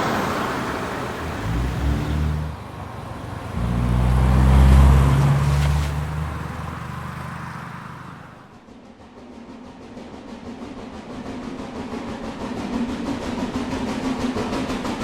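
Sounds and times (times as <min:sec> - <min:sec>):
vehicle driving past: 0:00.0 - 0:08.5.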